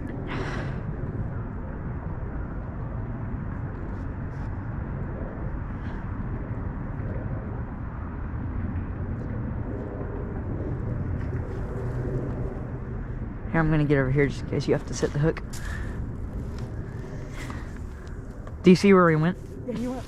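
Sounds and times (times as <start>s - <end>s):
low rumbling background noise: 0.0s - 20.0s.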